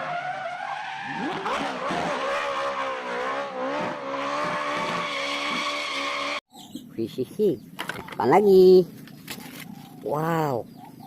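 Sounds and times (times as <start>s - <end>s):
racing car engine revving: 1.0s - 6.4s.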